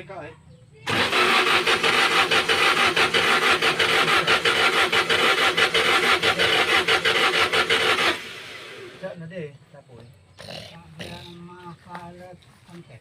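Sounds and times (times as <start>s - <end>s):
starter motor cranking engine: 0.9s - 9.2s.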